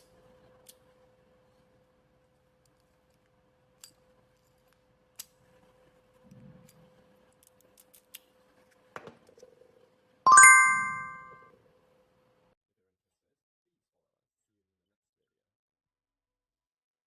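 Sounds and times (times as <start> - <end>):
bright chime: 10.3 - 11.4.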